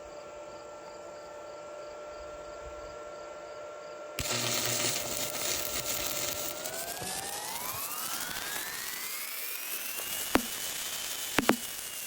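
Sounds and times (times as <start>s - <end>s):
crickets chirping: 0.1s - 4.0s
steady hum: 4.2s - 12.0s
welding arc crackling hiss: 4.2s - 12.0s.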